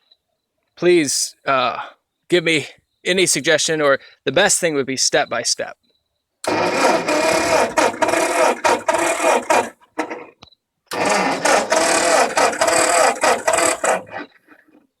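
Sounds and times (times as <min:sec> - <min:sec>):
tractor engine cranking: 0:06.4 - 0:15.0.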